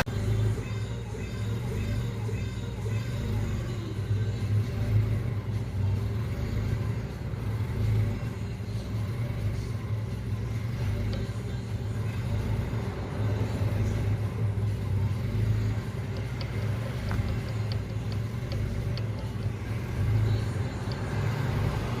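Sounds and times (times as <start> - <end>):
pickup engine idling: 0.0 - 22.0
faint light ticks: 16.0 - 19.6.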